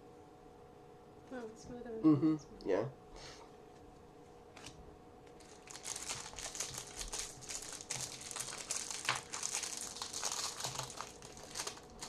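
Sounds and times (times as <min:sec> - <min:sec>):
plastic wrapper crinkling: 0:04.6 - 0:12.0.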